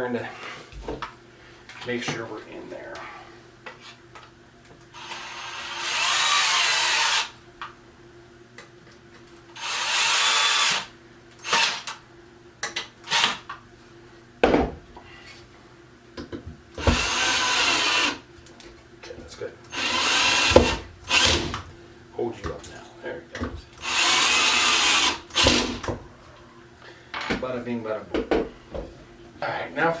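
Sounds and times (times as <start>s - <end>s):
cordless drill driving screws: 5.0s - 7.3s, 9.6s - 12.0s, 16.8s - 18.2s, 19.7s - 21.6s, 23.8s - 25.9s.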